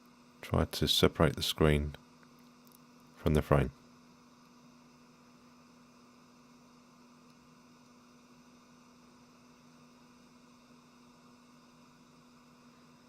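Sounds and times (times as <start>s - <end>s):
faint electrical hum: 0.0s - 13.0s
low hiss: 0.0s - 13.0s.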